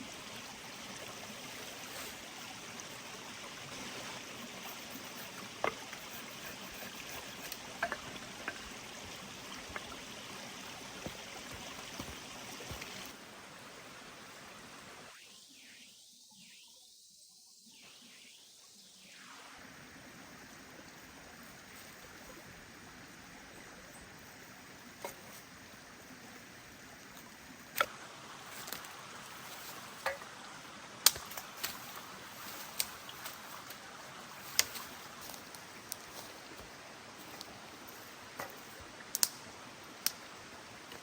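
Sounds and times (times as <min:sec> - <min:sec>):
wood fire crackling: 0:31.0 - 0:33.6, 0:34.4 - 0:40.2.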